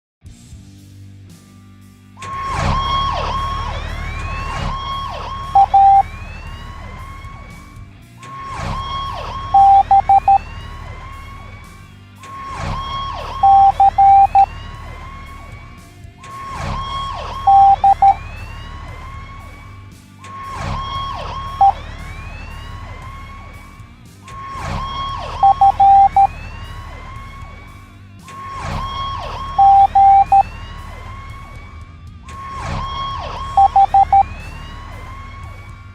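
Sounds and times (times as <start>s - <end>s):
cartoon siren sound effect: 2.2s - 7.6s, 8.2s - 11.6s, 12.2s - 15.6s, 16.2s - 19.6s, 20.2s - 23.6s, 24.3s - 27.7s, 28.3s - 31.6s, 32.3s - 35.8s
morse code beeps: 4.3s - 6.2s, 8.4s - 10.6s, 12.3s - 14.5s, 16.4s - 18.3s, 20.4s - 21.8s, 24.4s - 26.4s, 28.4s - 30.5s, 32.5s - 34.4s.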